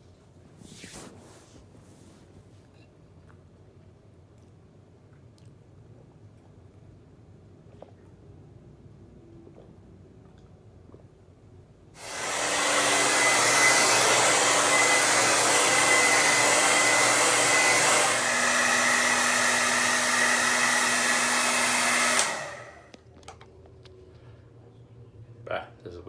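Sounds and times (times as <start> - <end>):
hair dryer running: 12.0 - 23.0.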